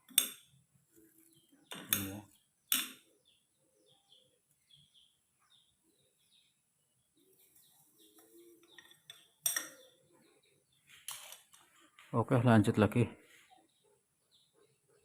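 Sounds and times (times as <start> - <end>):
faint bird chirps: 0.9 - 11.1.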